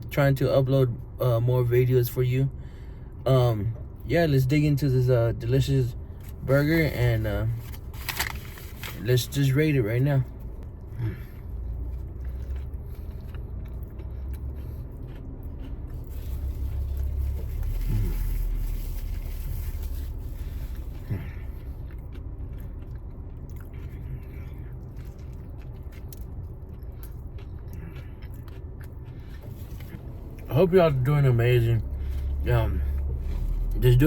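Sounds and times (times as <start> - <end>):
low rumble: 5.9 - 34.0
person biting and chewing: 10.6 - 19.4, 20.3 - 30.5.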